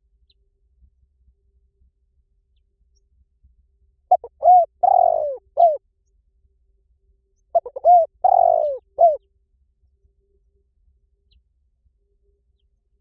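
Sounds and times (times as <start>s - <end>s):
dove cooing: 4.1s - 5.8s, 7.6s - 9.2s.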